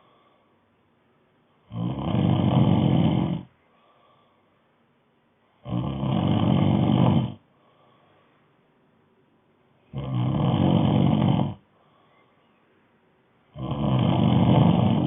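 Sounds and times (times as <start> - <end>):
person snoring: 1.7 - 3.5, 5.6 - 7.4, 9.9 - 11.6, 13.5 - 15.0.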